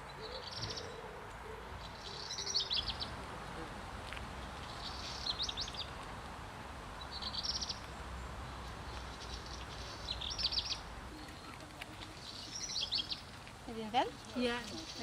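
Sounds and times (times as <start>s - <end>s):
small songbird chirping: 0.0s - 3.2s, 4.4s - 6.0s, 7.0s - 13.4s.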